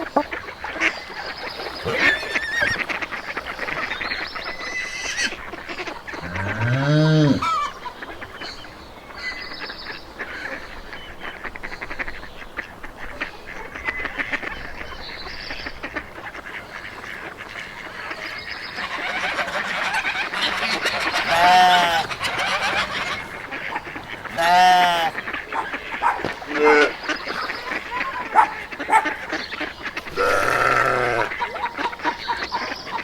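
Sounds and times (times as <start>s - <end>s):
geese gabbling: 0.0s - 33.0s
goose honk: 1.8s - 8.4s, 15.6s - 33.0s.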